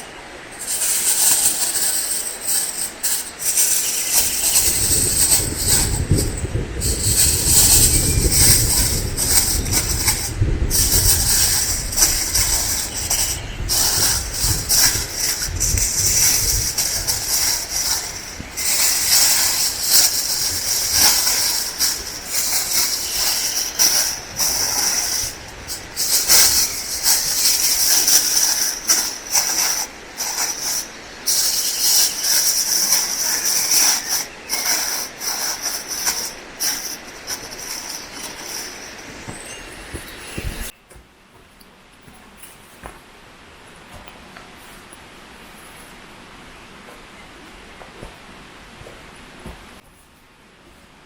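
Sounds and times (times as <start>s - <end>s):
fat crackling and popping: 0.5s - 40.7s.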